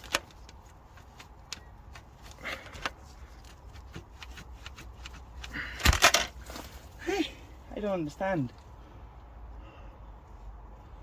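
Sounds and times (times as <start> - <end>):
hand tools clicking and tapping: 0.0 - 6.7.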